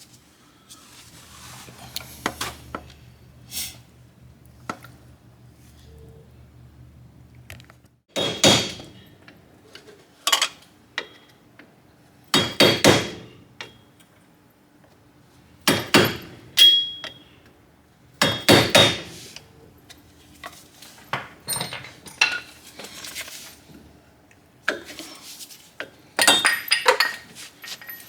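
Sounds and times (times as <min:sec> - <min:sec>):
hammer striking metal: 0:08.1 - 0:09.1, 0:15.7 - 0:17.2.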